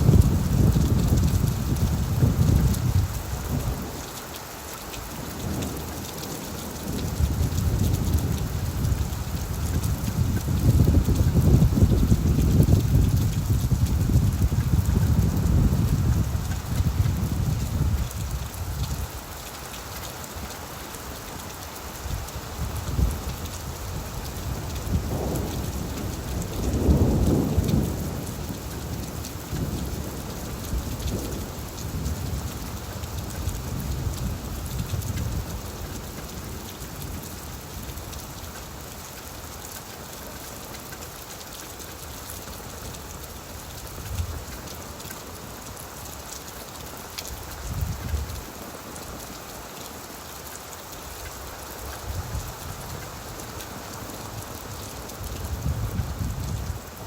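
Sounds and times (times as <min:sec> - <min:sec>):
thunder rumbling: 0:00.0 - 0:04.0, 0:05.4 - 0:18.5, 0:24.4 - 0:35.5
rain falling on leaves: 0:00.0 - 0:57.0.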